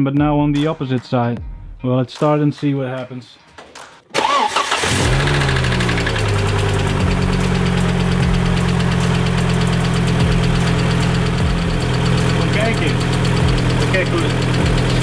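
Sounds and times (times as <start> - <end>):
car engine idling: 4.5 - 15.0
engine knock: 5.0 - 15.0.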